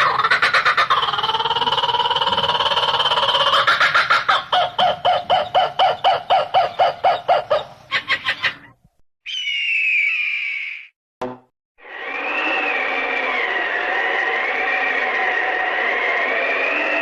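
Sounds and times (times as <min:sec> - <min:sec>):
animal-like calls: 0:00.0 - 0:10.9.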